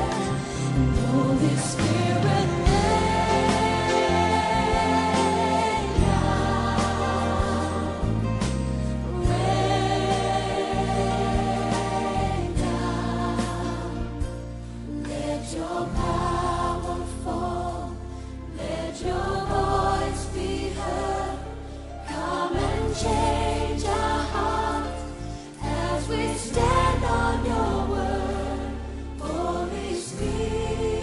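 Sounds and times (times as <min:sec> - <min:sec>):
sustained low bass: 0:00.0 - 0:15.0
voices singing in harmony: 0:00.0 - 0:31.0.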